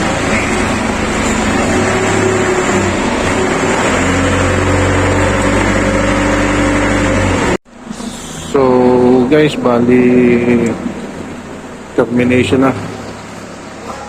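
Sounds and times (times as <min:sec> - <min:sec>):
loud mechanical drone: 0:00.0 - 0:14.0
steady higher tones: 0:00.0 - 0:14.0.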